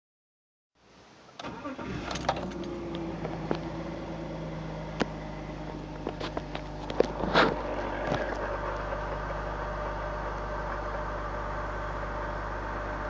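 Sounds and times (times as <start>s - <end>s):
car engine starting and idling: 1.3s - 13.0s.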